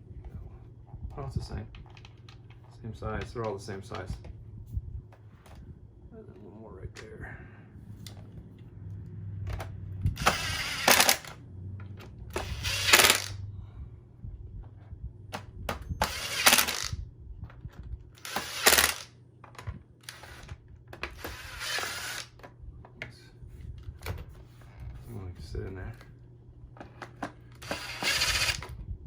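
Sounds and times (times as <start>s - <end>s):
low steady hum: 0.0s - 29.0s
screwdriver bursts: 10.2s - 11.4s, 12.3s - 13.4s, 15.7s - 17.0s, 18.2s - 19.1s, 20.0s - 22.4s, 27.6s - 28.7s.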